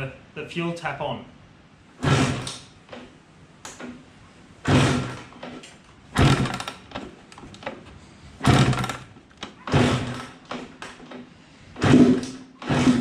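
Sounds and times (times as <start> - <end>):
dirt bike kickstart thumps: 2.0 - 3.2, 4.6 - 7.8, 8.4 - 13.0.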